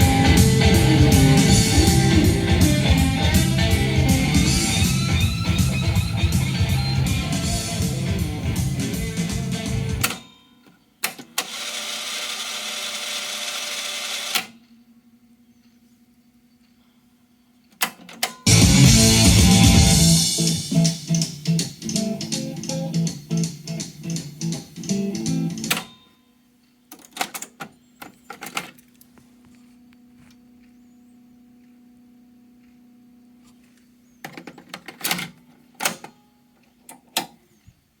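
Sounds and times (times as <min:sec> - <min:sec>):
guitar-led song from cassette: 0:00.0 - 0:10.3, 0:18.2 - 0:26.0.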